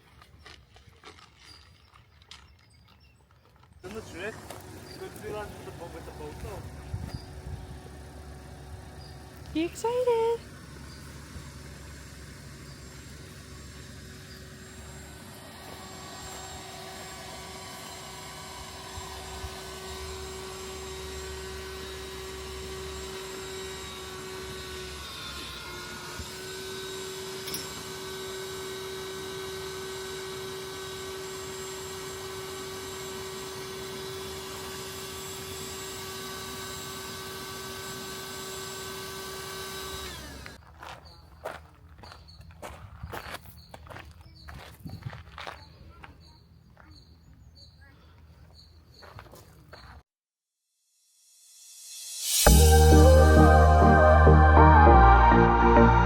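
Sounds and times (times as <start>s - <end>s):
motor hum: 3.6s - 40.6s.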